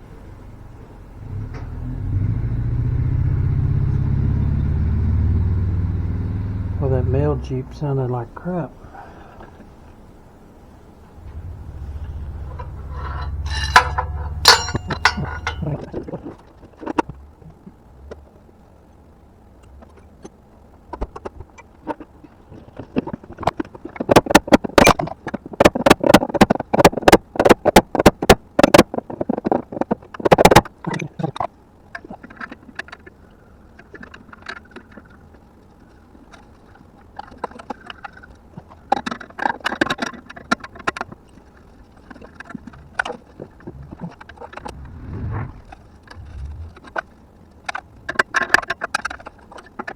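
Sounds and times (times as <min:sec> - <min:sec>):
passing vehicle engine rumble: 0:00.0 - 0:09.9, 0:10.5 - 0:16.2, 0:43.7 - 0:48.2
metallic clicks of hand tools: 0:12.5 - 0:15.8.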